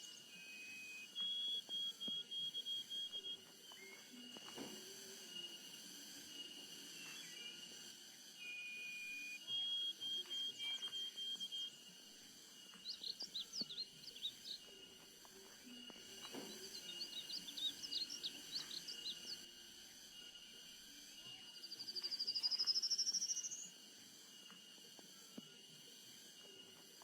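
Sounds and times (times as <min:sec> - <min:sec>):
small birds chirping: 0:12.7 - 0:15.1, 0:15.8 - 0:19.5.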